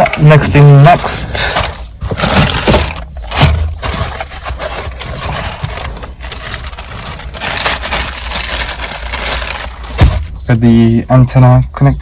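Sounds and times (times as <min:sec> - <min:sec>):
plastic and wiring rustling: 0:00.0 - 0:10.5
dull thump: 0:09.9 - 0:10.4.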